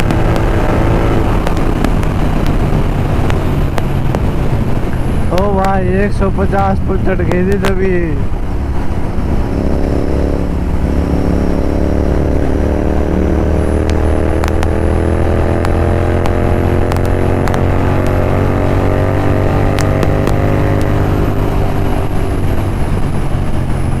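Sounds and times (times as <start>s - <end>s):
motorcycle engine at highway speed: 0.0s - 24.0s
faint sharp clicks: 13.8s - 14.8s.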